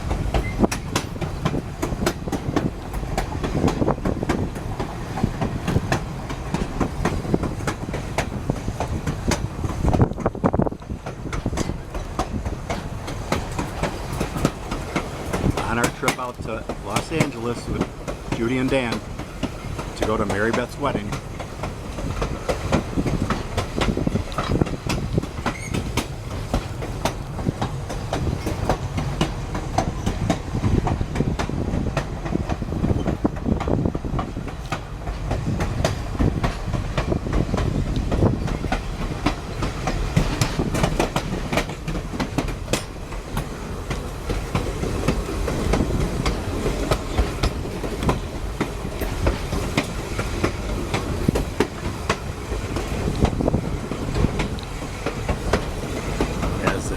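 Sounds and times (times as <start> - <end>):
train rumble: 0.0 - 56.9
wheels clicking over rail joints: 0.0 - 56.9.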